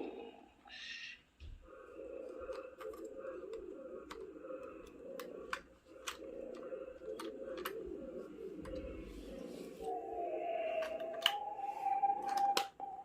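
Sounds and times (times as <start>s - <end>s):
sharp clicks and crackles: 2.2s - 9.0s.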